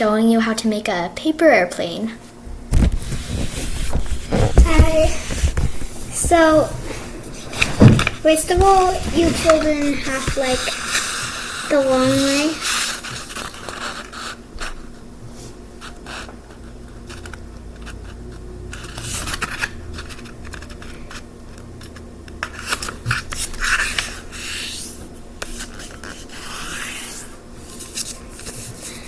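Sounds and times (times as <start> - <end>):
paper folding and rustling: 2.6 - 14.4.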